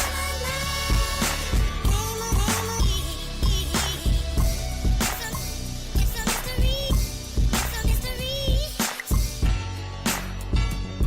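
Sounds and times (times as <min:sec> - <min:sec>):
pop r and b song with singing: 0:00.0 - 0:10.7.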